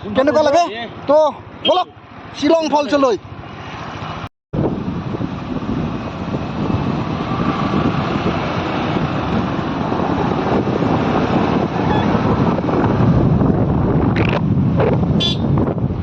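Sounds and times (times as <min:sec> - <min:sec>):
road noise: 0:00.0 - 0:16.0
wind buffeting microphone: 0:04.6 - 0:16.0.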